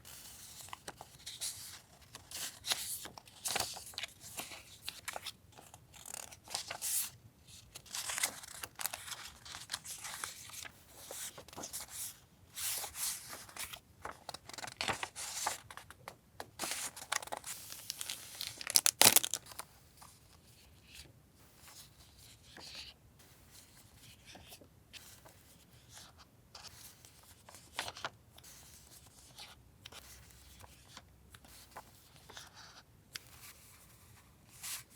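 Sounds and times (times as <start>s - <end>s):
paper and wrappers rustling: 16.5s - 19.7s.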